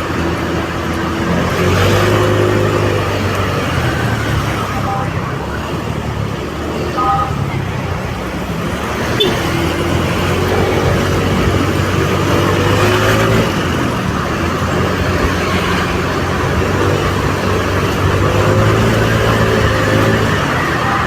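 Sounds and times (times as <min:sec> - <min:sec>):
engine and road noise drone: 0:00.0 - 0:21.0
faint wavering tones: 0:10.3 - 0:12.9.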